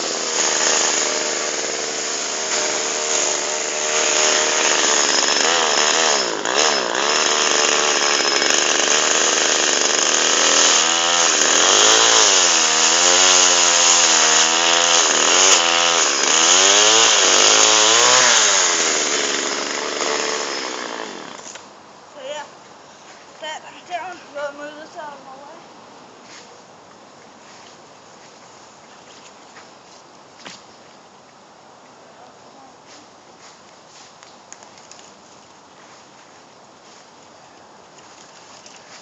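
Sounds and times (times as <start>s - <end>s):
chainsaw cutting tree: 0.0s - 21.6s.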